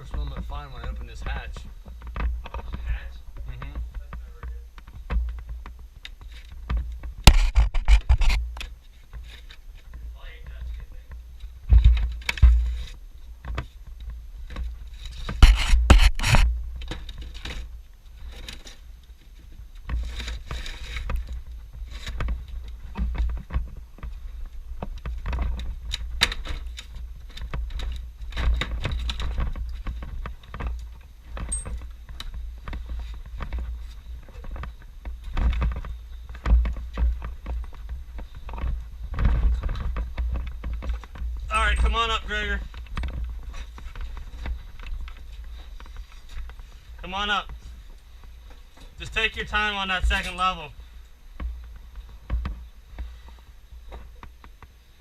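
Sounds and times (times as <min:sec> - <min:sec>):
wooden ladder knocks and clatter: 0:00.0 - 0:54.8.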